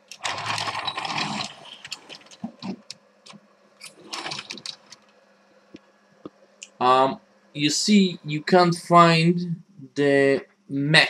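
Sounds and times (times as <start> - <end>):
plastic toy parts clattering: 0.0 - 3.0, 3.8 - 5.0.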